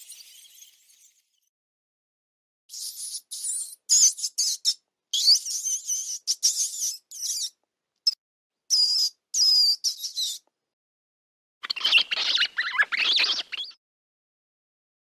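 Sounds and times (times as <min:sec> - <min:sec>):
mouse squeaking: 0:02.7 - 0:07.6, 0:08.7 - 0:10.4, 0:11.6 - 0:13.8.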